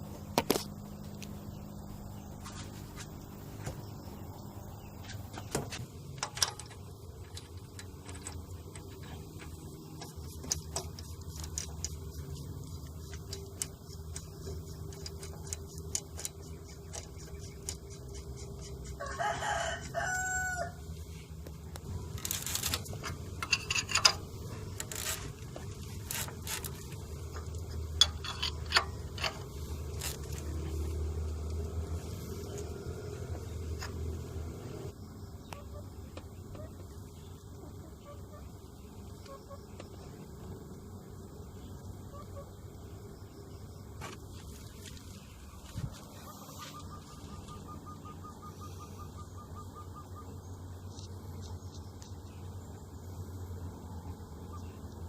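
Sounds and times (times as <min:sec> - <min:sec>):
rooster crowing: 0:18.9 - 0:20.9.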